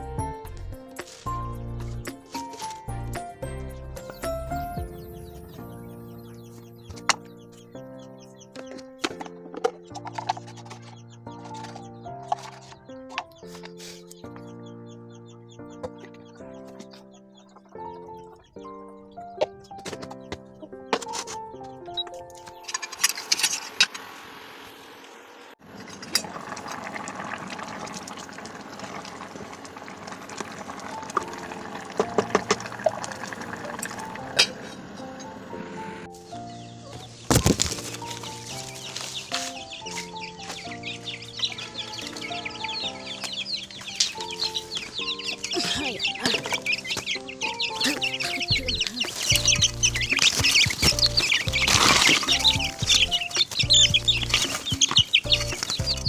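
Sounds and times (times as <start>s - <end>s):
gentle background music: 0.0s - 23.8s, 29.9s - 56.0s
small birds chirping rapidly: 1.0s - 23.6s, 35.0s - 56.0s
liquid bubbling in cooking: 25.6s - 34.3s
hens clucking: 37.8s - 56.0s.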